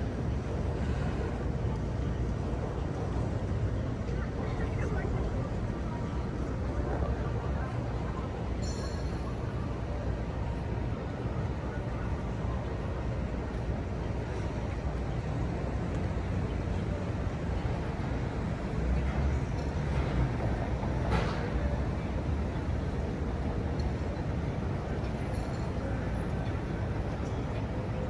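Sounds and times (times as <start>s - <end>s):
vehicle road noise rumble: 9.2s - 28.0s.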